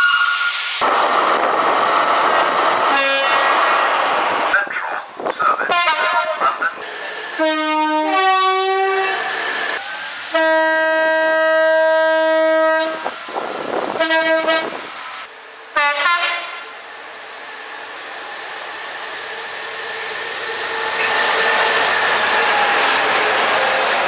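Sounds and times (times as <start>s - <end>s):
train passing by rushing: 0.0s - 24.0s
train horn blasts: 2.9s - 3.4s, 5.7s - 6.4s, 7.4s - 9.3s, 10.3s - 13.1s, 14.0s - 14.8s, 15.8s - 16.6s.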